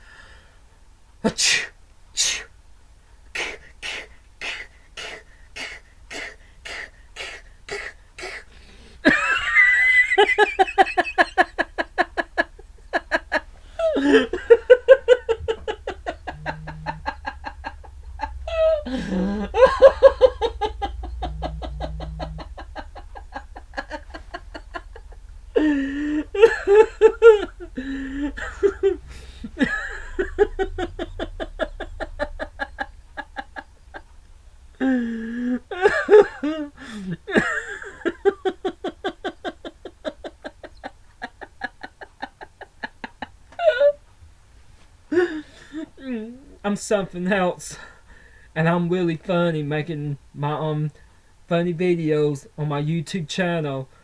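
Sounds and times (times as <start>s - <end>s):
man laughing: 9.0s - 34.1s, 34.8s - 44.0s.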